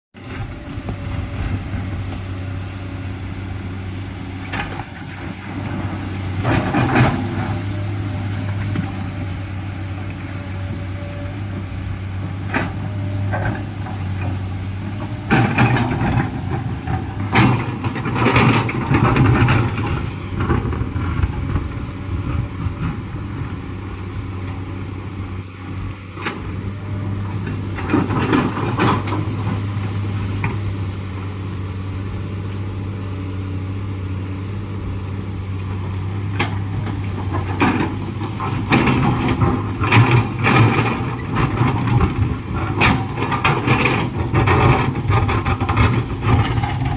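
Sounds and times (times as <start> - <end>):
excavator diesel engine: 0.1 - 46.9
excavator clattering knocks: 3.7 - 23.5, 26.2 - 31.8, 35.6 - 46.9.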